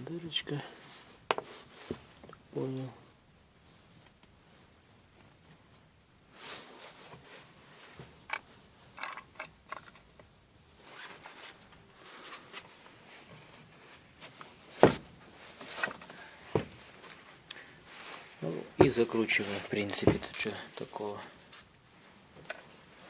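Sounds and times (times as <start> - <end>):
metal clicks and scrapes: 9.0 - 10.1.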